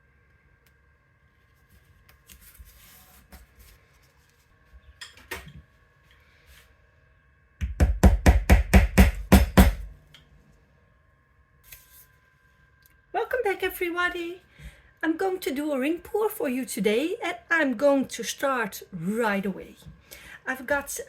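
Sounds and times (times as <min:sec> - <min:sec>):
rustling and handling: 0:01.3 - 0:06.8
loud knocks: 0:07.6 - 0:09.9.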